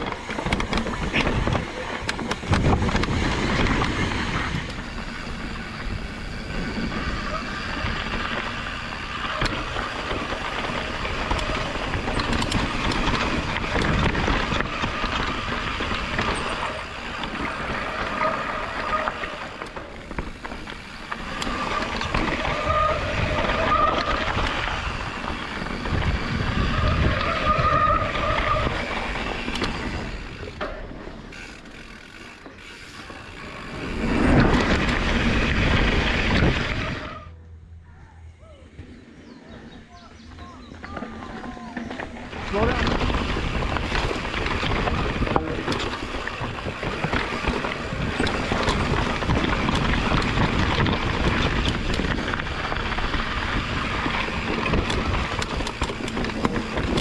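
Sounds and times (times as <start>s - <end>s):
bike frame and chain rattling: 0.0s - 37.3s, 39.2s - 57.0s
bike tyres on dirt: 0.0s - 57.0s
rear hub ratchet clicking: 31.3s - 34.1s.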